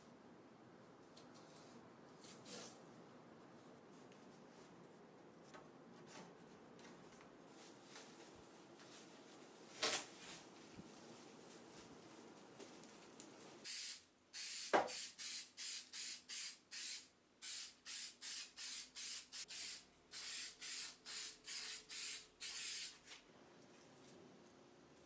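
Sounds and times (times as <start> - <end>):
spray nozzle hissing in bursts: 13.7 - 23.0.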